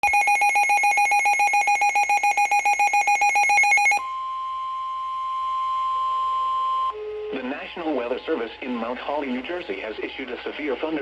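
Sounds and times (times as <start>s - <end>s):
rapid high pulsing beeps: 0.0s - 4.0s
steady alarm tone: 0.0s - 7.9s.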